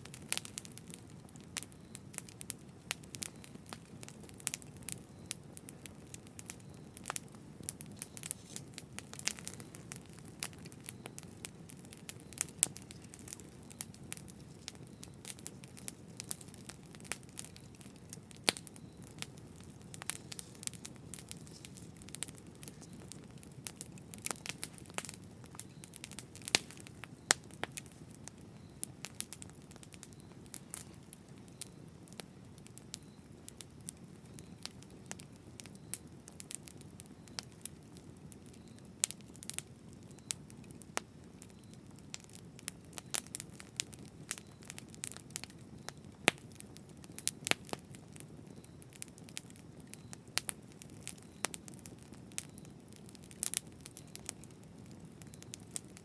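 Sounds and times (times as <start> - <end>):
burning wood crackling: 0.0 - 56.0
campfire flames rumbling: 0.0 - 56.0.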